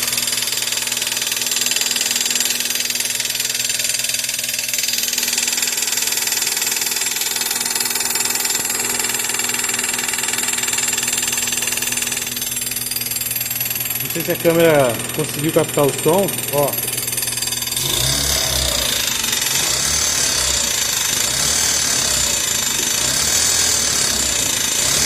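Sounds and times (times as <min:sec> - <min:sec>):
loud abnormal engine noise: 0:05.1 - 0:25.0
car engine running: 0:05.2 - 0:25.0.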